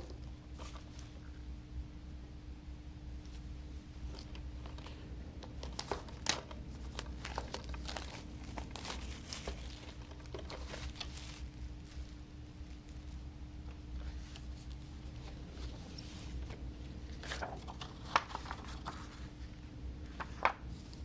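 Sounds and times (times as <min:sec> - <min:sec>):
low steady hum: 0:00.0 - 0:21.0
plastic packaging crinkling: 0:04.0 - 0:19.5.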